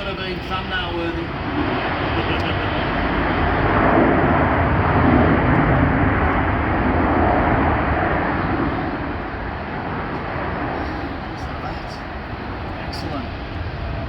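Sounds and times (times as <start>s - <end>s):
jet engine rushing: 0.0s - 14.0s
wind buffeting microphone: 0.0s - 14.0s.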